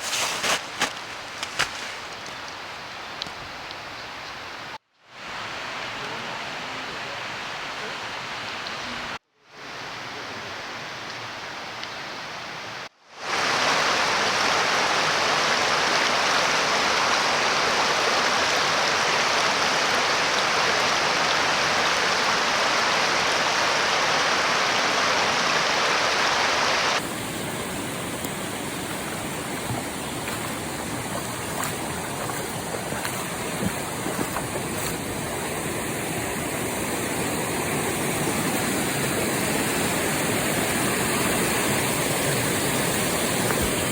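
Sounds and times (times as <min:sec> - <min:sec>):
stream rushing over rocks: 0:13.2 - 0:43.9.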